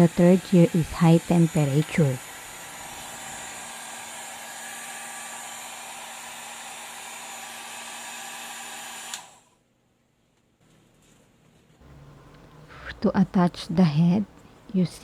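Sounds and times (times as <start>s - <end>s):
hair dryer running: 0.0s - 9.5s
hair dryer switch click: 9.1s - 9.3s.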